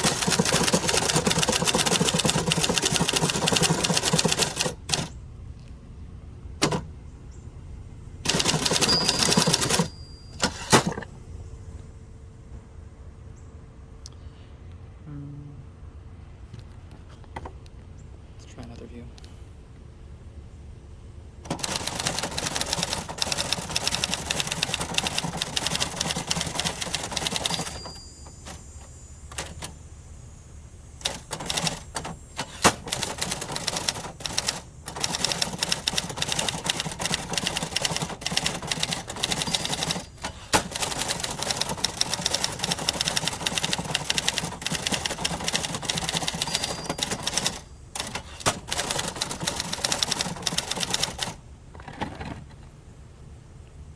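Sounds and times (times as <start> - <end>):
manual typewriter keys clacking: 0.0 - 5.2, 8.3 - 11.0, 21.5 - 29.8, 31.0 - 51.4.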